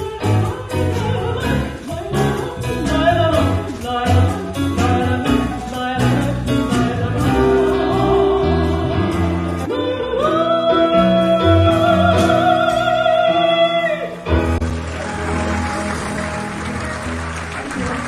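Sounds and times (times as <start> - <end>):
person singing with vibrato: 0.0 - 14.4
live band chords: 0.0 - 18.0
audience applause: 14.6 - 18.0.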